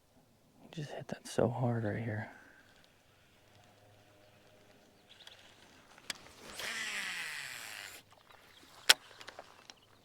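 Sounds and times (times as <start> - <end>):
reel clicks and ticks: 2.6 - 9.8
fishing reel spool whirring: 5.0 - 8.6.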